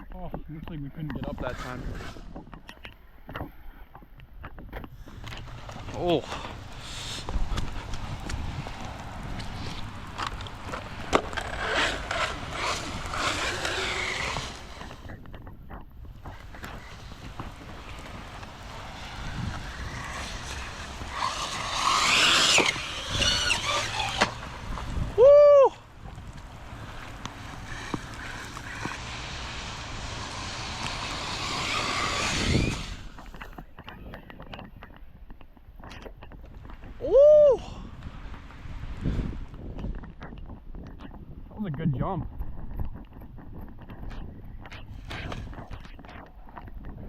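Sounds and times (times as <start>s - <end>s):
toy truck wheels scraping concrete: 1.0s - 2.9s, 4.9s - 33.7s, 44.2s - 46.7s.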